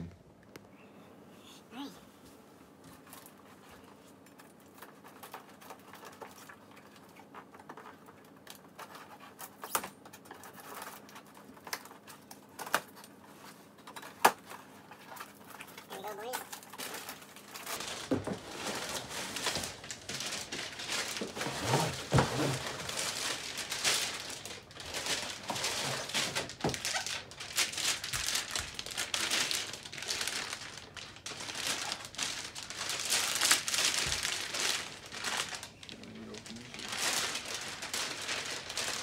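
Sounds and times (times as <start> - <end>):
wrapping and cardboard crinkling: 2.7 - 39.0.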